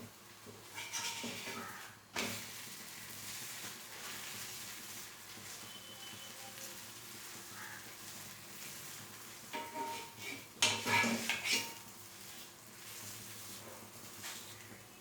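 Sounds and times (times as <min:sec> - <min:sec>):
faint frying sizzle: 0:00.0 - 0:15.0
metal utensil scraping pan: 0:00.6 - 0:02.5, 0:09.5 - 0:12.5.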